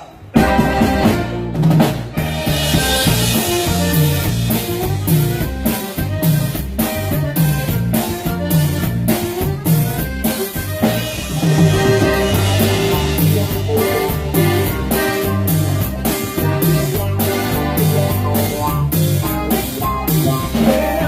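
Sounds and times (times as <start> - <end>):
live band playing instrumental: 0.0 - 21.0.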